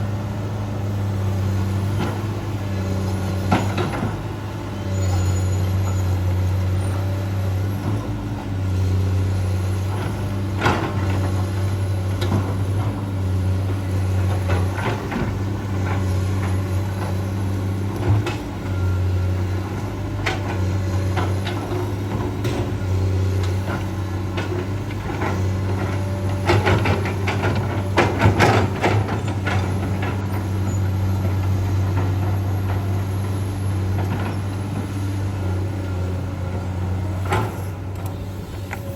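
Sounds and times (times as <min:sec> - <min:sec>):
excavator diesel engine running: 0:00.0 - 0:38.9
machine knocks and clatter: 0:19.8 - 0:30.6.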